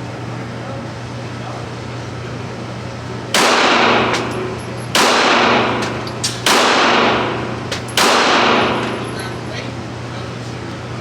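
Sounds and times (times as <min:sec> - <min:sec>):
gunshots with echo: 0:03.4 - 0:09.1.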